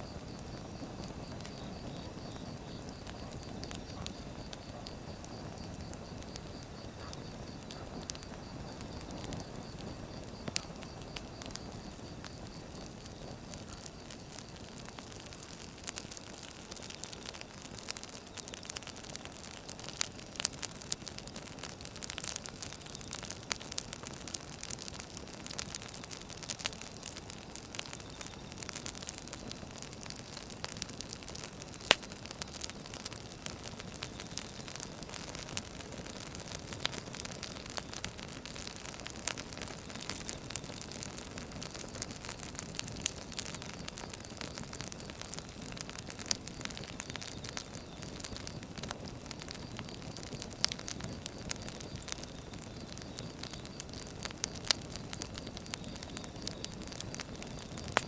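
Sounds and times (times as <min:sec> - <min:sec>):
fire crackles and pops: 0:00.0 - 0:58.0
firewood hissing: 0:00.0 - 0:58.0.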